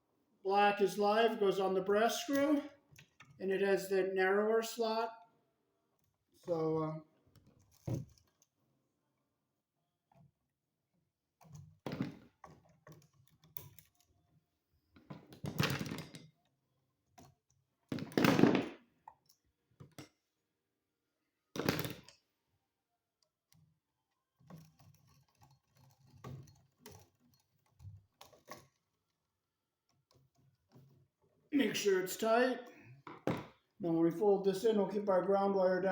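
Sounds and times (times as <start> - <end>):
small clicks and knocks of wire: 7.3 - 8.6, 11.4 - 14.4, 15.0 - 18.0, 19.0 - 20.4, 23.1 - 29.2, 29.8 - 31.2.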